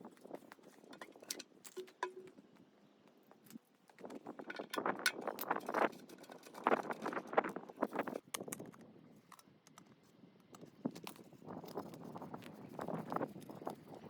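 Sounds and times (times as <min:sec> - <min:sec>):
metal parts and tools clinking: 0:00.9 - 0:02.4, 0:04.3 - 0:08.2.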